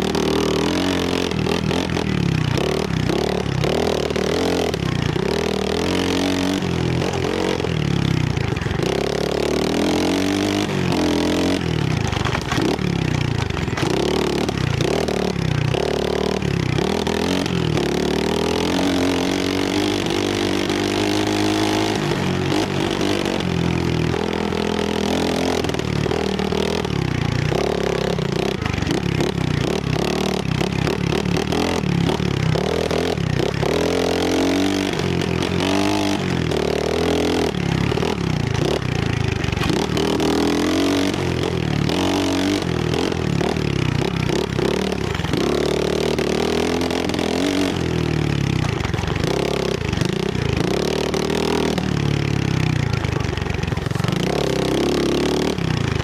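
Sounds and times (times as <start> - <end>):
motorbike engine revving: 0.0 - 56.0
rattles and knocks: 12.0 - 14.5.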